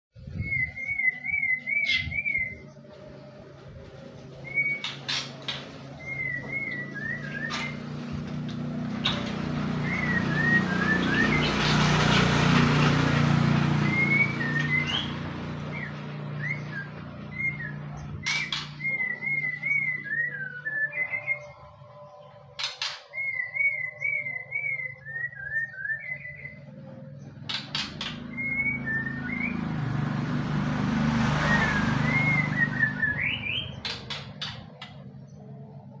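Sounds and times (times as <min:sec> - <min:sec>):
bird singing whistled phrases: 0:00.2 - 0:02.7, 0:04.4 - 0:05.3, 0:05.9 - 0:07.9, 0:13.8 - 0:22.2, 0:22.8 - 0:26.8, 0:28.0 - 0:29.7, 0:31.4 - 0:34.6.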